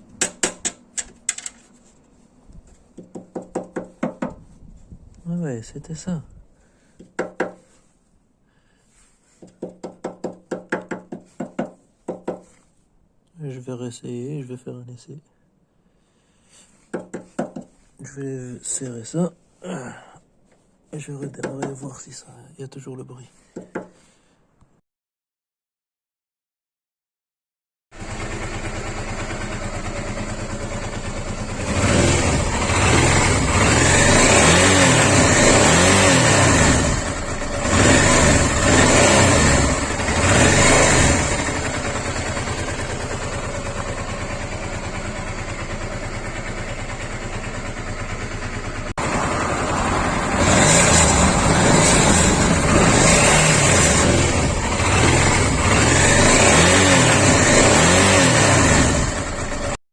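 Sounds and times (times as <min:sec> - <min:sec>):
mechanical engine noise: 0:28.0 - 0:59.8
motorcycle engine idling and revving: 0:28.0 - 0:59.8.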